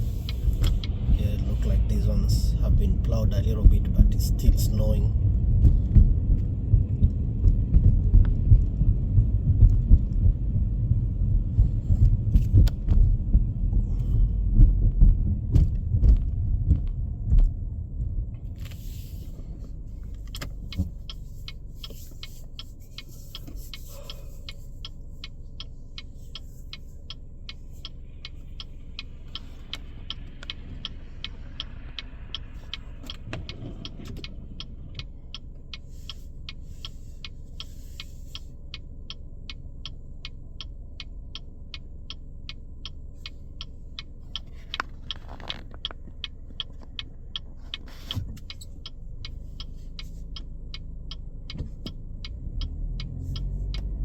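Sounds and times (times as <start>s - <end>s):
car rumbling over snowy road: 0.0s - 54.0s
quiet engine hum: 0.0s - 54.0s
indicator relay ticking: 0.2s - 5.1s, 19.9s - 54.0s.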